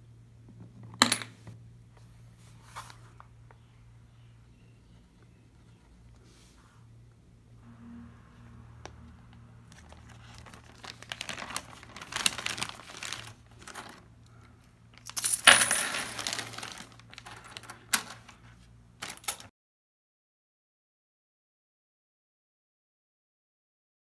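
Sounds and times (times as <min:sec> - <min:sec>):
coins clinking and rattling: 0:15.0 - 0:18.2, 0:19.0 - 0:19.5.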